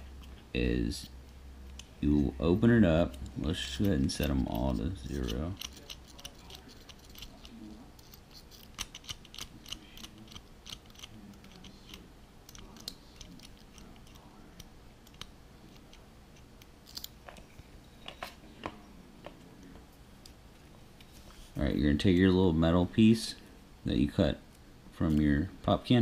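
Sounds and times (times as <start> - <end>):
padlock dials clicking: 3.0 - 17.2.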